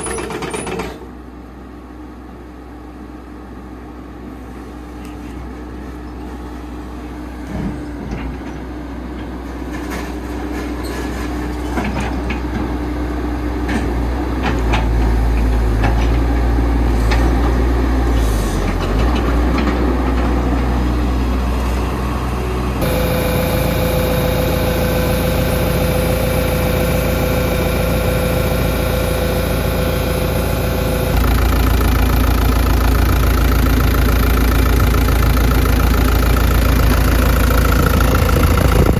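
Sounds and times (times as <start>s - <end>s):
excavator diesel engine running: 0.0s - 38.9s
steady whine: 22.8s - 38.9s.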